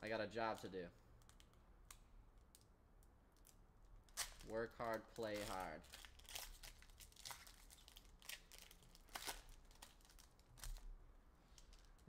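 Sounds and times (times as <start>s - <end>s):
wrappers crinkling and tearing: 0.4s - 1.5s, 3.4s - 10.9s, 11.5s - 12.0s.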